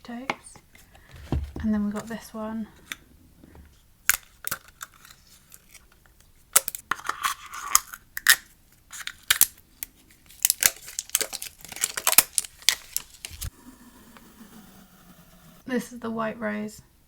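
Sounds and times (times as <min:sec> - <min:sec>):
packaging crinkling and tearing: 0:04.1 - 0:13.5.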